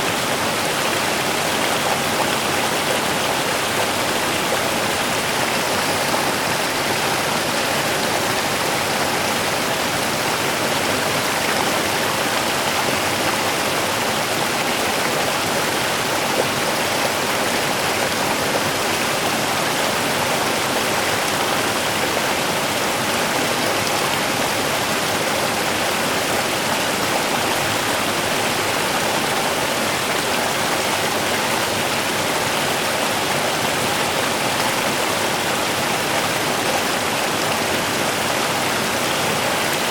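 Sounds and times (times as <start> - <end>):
river babbling over stones: 0.0 - 39.9.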